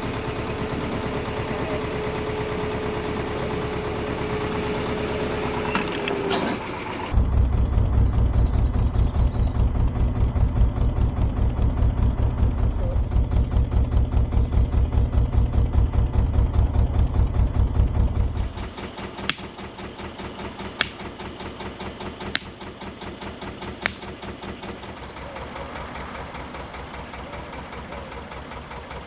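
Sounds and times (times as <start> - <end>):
diesel engine running: 0.0 - 5.7, 6.8 - 29.0
sharp metallic strikes: 19.3 - 19.7, 20.8 - 21.2, 22.4 - 22.7, 23.9 - 24.2.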